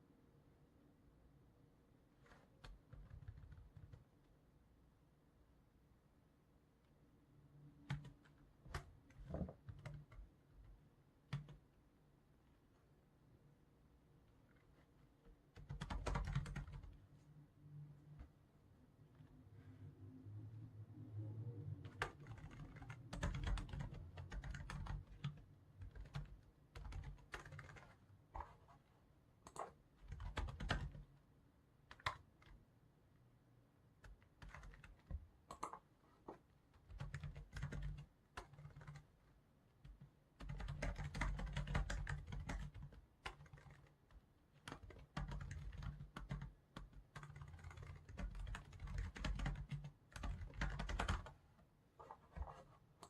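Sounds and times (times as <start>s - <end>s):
typing on computer keyboard: 2.3s - 4.1s, 7.8s - 10.3s, 11.3s - 11.6s, 15.5s - 17.0s, 21.8s - 28.6s, 29.4s - 31.1s, 31.9s - 32.6s, 34.0s - 35.9s, 36.8s - 39.2s, 39.8s - 51.4s.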